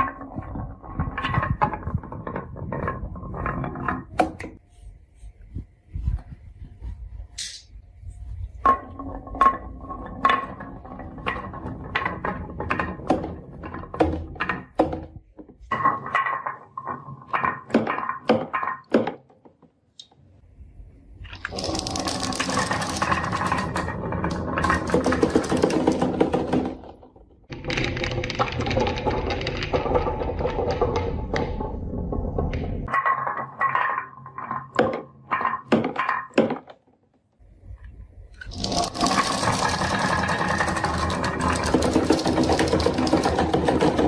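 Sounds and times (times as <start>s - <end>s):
marbles clacking on marble run: 8.7s - 19.2s, 21.3s - 36.8s, 38.4s - 44.0s
many marbles rolling rattle: 21.3s - 35.8s, 38.4s - 44.0s.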